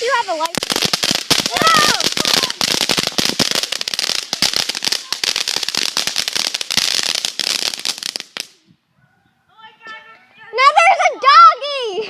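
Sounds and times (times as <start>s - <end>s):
firework crackling: 0.0s - 8.6s.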